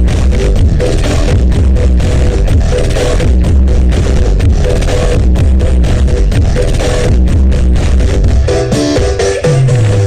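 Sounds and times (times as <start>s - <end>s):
loud music with heavy bass: 0.0s - 10.0s.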